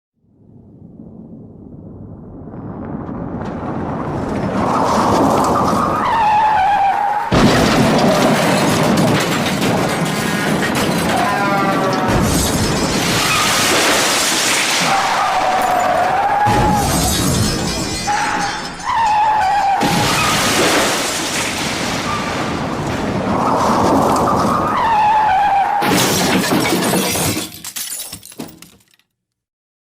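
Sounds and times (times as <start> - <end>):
debris clattering: 3.4 - 25.1, 25.8 - 29.1
tyres screeching: 5.4 - 13.7
glass shattering: 7.3 - 22.4, 25.8 - 29.0
car crash impact: 7.3 - 25.0, 25.8 - 28.9.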